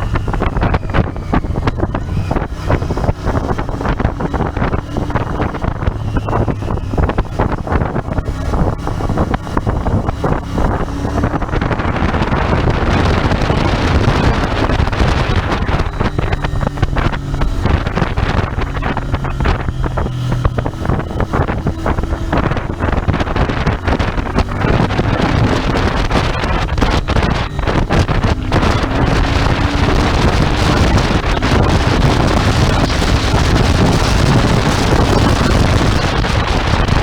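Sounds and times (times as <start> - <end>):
motorcycle engine running: 0.0 - 37.0
wind rushing over microphone: 0.0 - 37.0.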